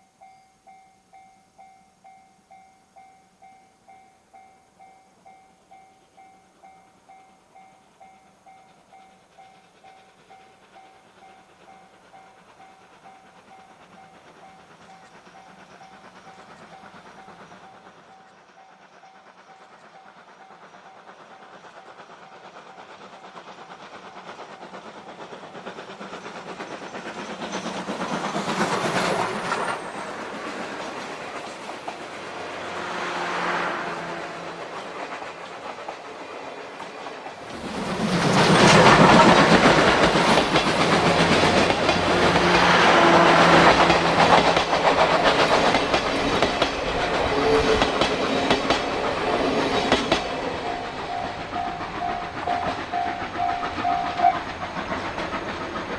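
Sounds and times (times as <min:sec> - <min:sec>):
steam locomotive passing: 0:00.0 - 0:55.9
wheels clattering over rail joints: 0:34.4 - 0:55.9.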